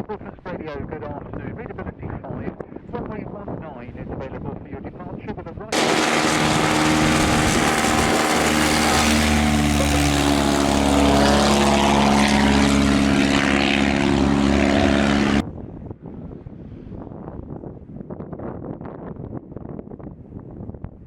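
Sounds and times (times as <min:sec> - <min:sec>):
wind noise on microphone: 0:00.0 - 0:21.0
propeller aircraft engine: 0:05.7 - 0:15.4.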